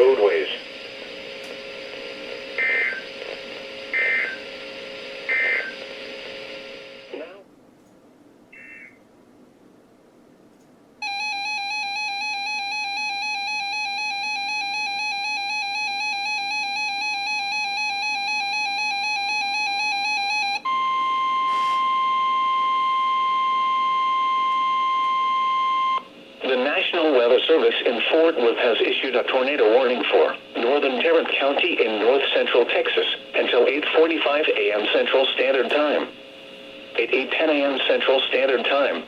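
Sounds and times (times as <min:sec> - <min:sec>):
warbling electronic alarm tone: 0:02.6 - 0:03.0, 0:03.9 - 0:04.4, 0:05.3 - 0:05.8, 0:11.0 - 0:26.1
steady warning alarm tone: 0:02.6 - 0:04.5, 0:05.1 - 0:07.1, 0:08.5 - 0:09.0, 0:11.0 - 0:26.1.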